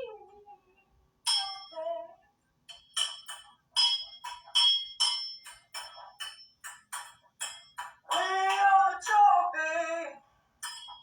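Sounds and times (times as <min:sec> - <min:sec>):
bright metallic dings: 0:01.3 - 0:01.8, 0:02.7 - 0:08.4, 0:10.6 - 0:11.0.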